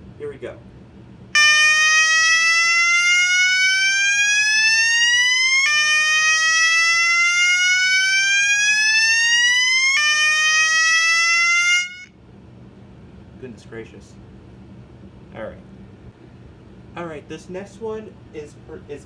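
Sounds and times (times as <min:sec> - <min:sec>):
fire alarm whoop: 0:01.4 - 0:12.1.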